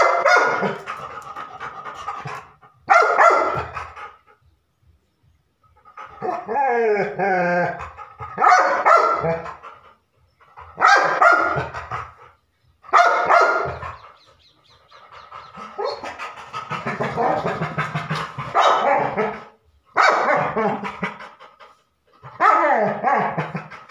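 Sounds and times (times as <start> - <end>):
dog barking loudly: 0.0 - 4.0, 8.2 - 9.7, 10.7 - 12.1, 12.9 - 14.2, 15.5 - 21.2, 22.2 - 23.9
dog whining: 13.8 - 16.3.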